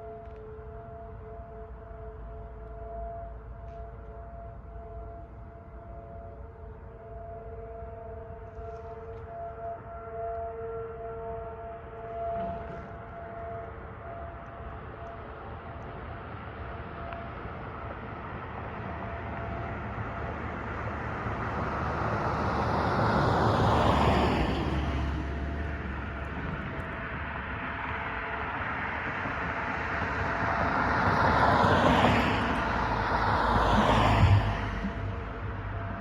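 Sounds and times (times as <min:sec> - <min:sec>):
cars driving past: 0:18.6 - 0:36.0.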